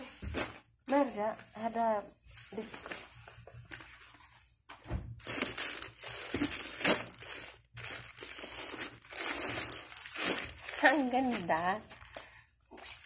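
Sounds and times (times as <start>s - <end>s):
packaging rustling and crumpling: 5.2s - 13.0s.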